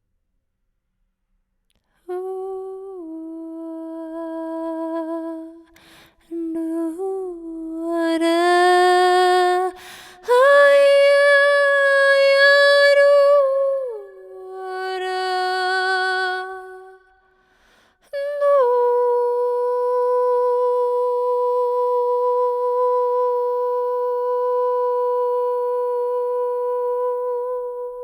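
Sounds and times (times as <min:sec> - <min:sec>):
woman singing wordless tones: 0:02.0 - 0:17.2, 0:18.0 - 0:28.0
breaths between phrases: 0:05.7 - 0:06.2, 0:09.8 - 0:10.3, 0:17.3 - 0:18.1.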